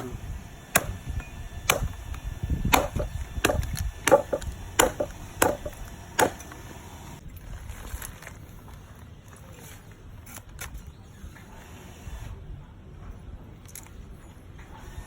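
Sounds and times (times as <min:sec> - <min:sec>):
knife chopping on wooden board: 0:02.7 - 0:06.5.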